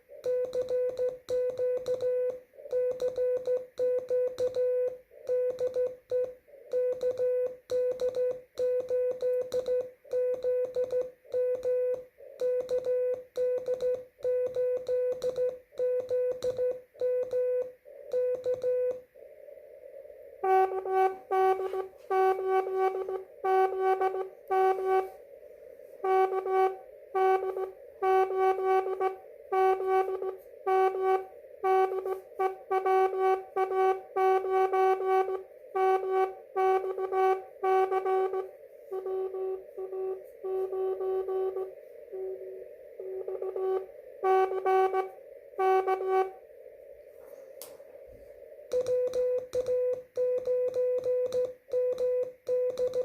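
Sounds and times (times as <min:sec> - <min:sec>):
radio band noise hiss: 0:00.0 - 0:08.6, 0:09.4 - 0:53.0
morse code tone: 0:00.0 - 0:19.1, 0:20.4 - 0:25.2, 0:26.0 - 0:46.4, 0:48.7 - 0:53.0
higher radio tone: 0:17.8 - 0:50.7.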